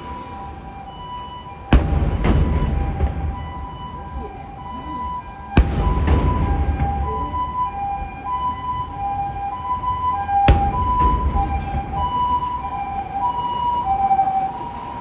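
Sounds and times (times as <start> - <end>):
low rumble: 0.0 - 13.4
two-tone ambulance siren: 0.0 - 15.0
firework bang: 1.5 - 13.4.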